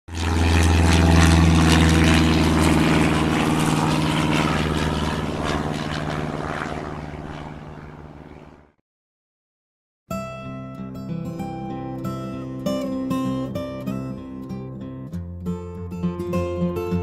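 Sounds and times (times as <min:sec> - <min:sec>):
turboprop engines droning: 0:00.1 - 0:08.8.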